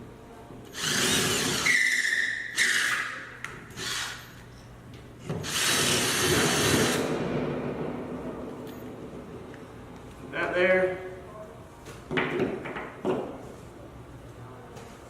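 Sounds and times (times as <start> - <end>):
power drill whining: 0.7 - 3.1, 3.7 - 4.4, 5.4 - 7.0.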